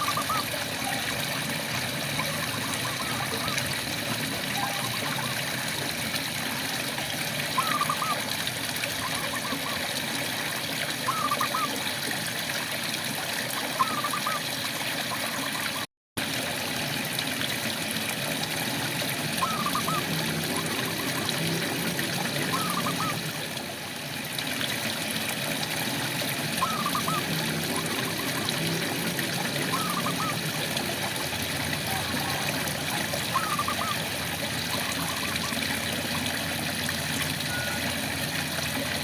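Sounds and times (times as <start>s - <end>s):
frog chirping calls: 7.6s - 8.2s, 19.4s - 21.1s, 22.5s - 23.2s, 26.6s - 28.2s, 33.3s - 34.0s.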